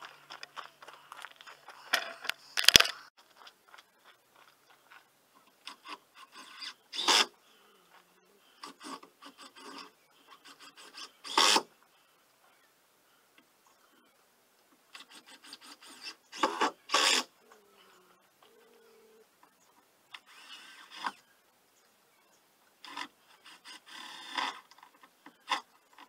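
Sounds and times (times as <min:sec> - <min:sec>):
camera handling noise: 0:02.0 - 0:03.0.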